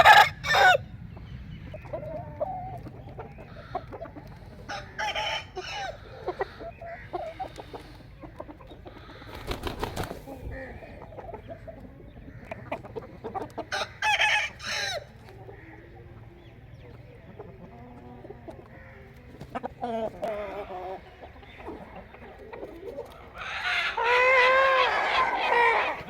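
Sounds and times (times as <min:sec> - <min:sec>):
roosters crowing: 0:00.0 - 0:01.0, 0:03.5 - 0:07.9, 0:13.6 - 0:15.7, 0:23.1 - 0:26.0.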